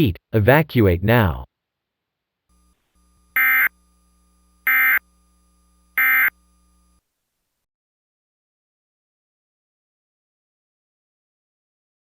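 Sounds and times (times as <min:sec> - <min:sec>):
buzzy digital data bursts: 0:02.6 - 0:05.3, 0:06.0 - 0:07.0.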